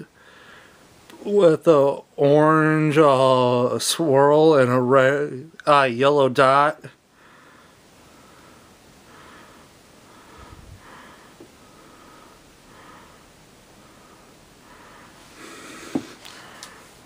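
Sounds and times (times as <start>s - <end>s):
person breathing through nose: 7.1s - 17.0s.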